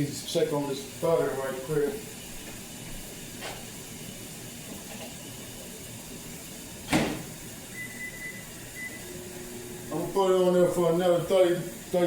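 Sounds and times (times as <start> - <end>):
steady hiss: 0.0 - 12.0
microwave door shutting clunk: 6.9 - 7.3.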